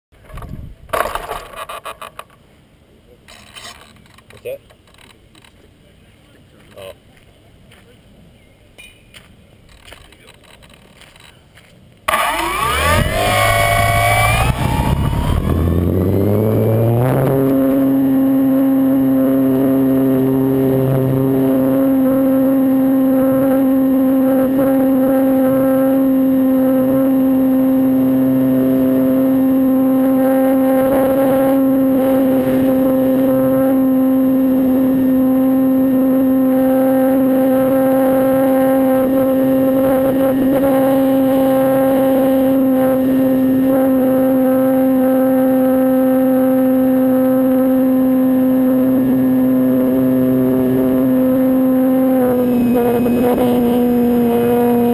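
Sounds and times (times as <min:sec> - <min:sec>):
model airplane motor revving: 0:12.1 - 0:54.9.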